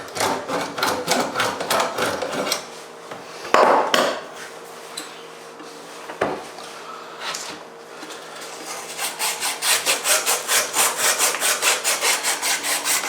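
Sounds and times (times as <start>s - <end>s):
deburring tool scraping pipe: 0.0s - 2.7s.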